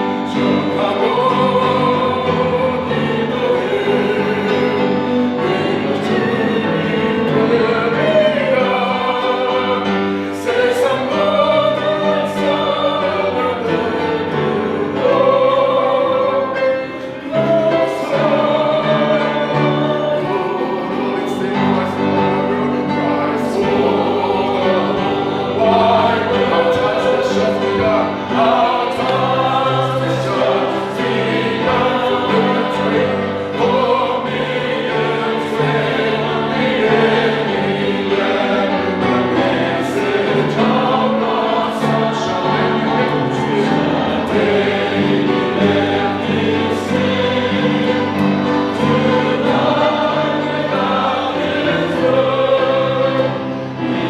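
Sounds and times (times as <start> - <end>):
choir singing a hymn: 0.0 - 54.0
instrumental accompaniment: 0.0 - 54.0.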